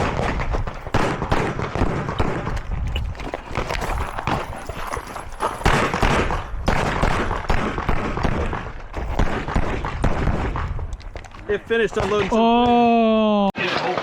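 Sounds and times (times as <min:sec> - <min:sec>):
pistol gunshots: 0:00.0 - 0:02.8, 0:05.6 - 0:11.0.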